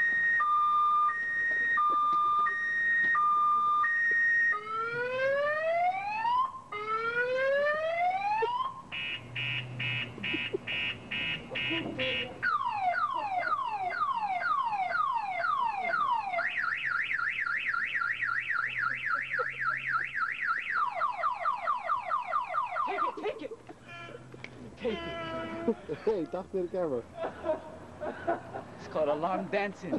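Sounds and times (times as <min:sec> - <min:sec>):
car alarm siren: 0:00.0 - 0:23.2.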